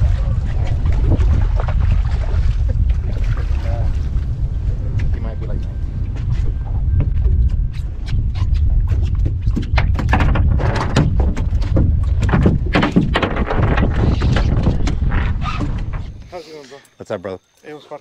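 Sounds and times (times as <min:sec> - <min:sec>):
boat motor rumbling: 0:00.0 - 0:16.3
wind on microphone: 0:00.0 - 0:16.3
sharp knocks and clatters: 0:08.4 - 0:16.2.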